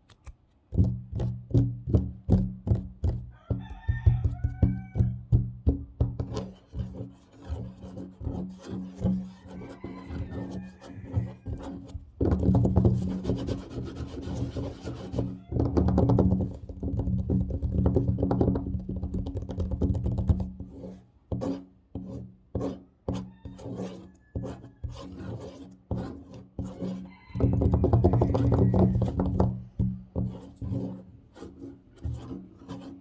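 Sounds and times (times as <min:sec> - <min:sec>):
scratching on a tabletop: 0:00.1 - 0:33.0
taps on a table: 0:00.8 - 0:06.9, 0:27.4 - 0:30.5.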